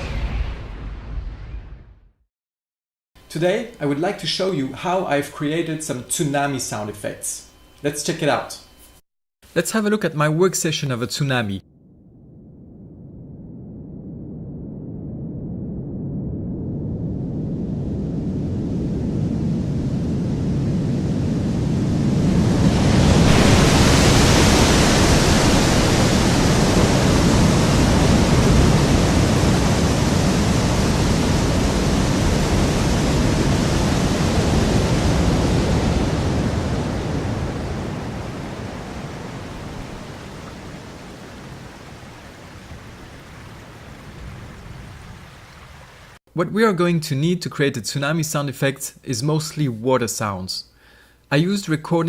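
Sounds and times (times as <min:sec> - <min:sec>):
wave rumble and crash: 0:00.0 - 0:02.1, 0:11.9 - 0:46.2
rushing water: 0:23.2 - 0:46.2.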